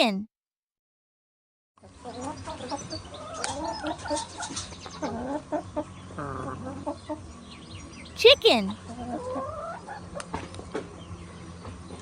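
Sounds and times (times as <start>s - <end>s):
chickens clucking: 1.8s - 7.4s, 8.9s - 11.0s.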